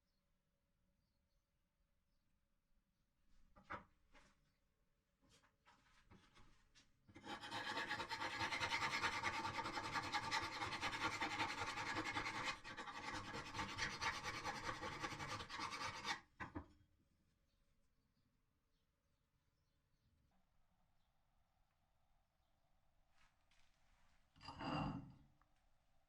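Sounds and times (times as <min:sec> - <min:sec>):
file rasping on steel: 0:07.2 - 0:16.3.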